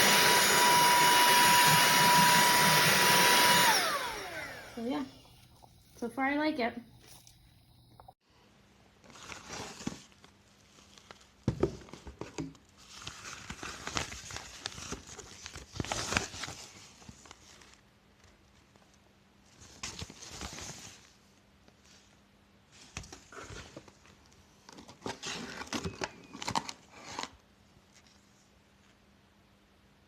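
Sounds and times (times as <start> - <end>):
handling rustling: 6.9 - 8.1.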